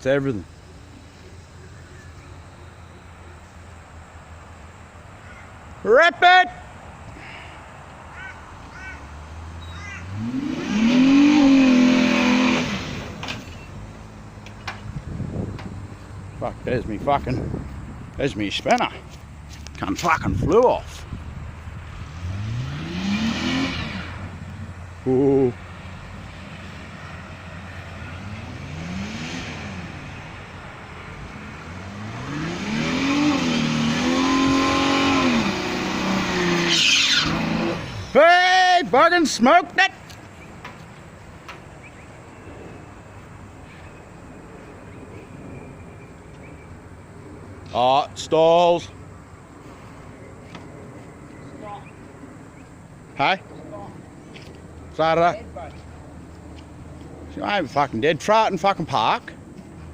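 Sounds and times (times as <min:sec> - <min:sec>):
car engine idling and revving: 0:08.5 - 0:19.9, 0:20.9 - 0:38.2.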